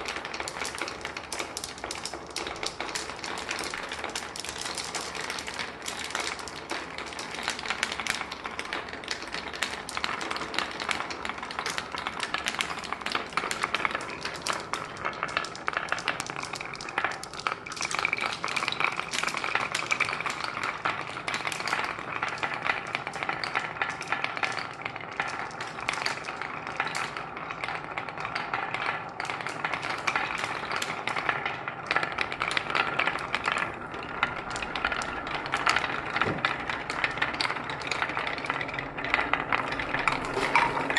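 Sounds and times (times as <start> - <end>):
marbles rolling and clattering: 0.0 - 40.9.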